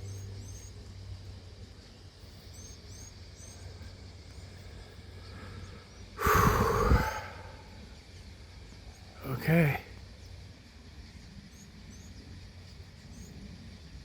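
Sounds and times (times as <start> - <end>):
small birds chirping: 0.0 - 14.0
steady low hum: 0.0 - 14.0
sudden loud rush of noise: 6.2 - 7.7.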